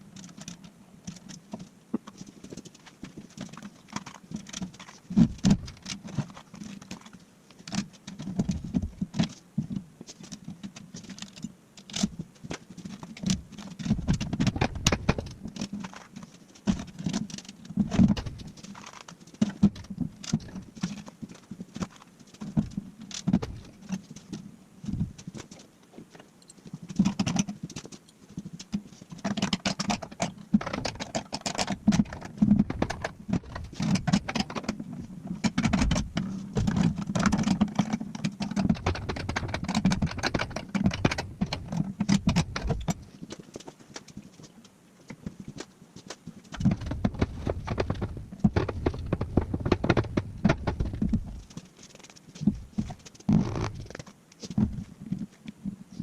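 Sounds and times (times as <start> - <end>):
parts knocking and rattling: 29.2 - 43.5, 46.4 - 54.8.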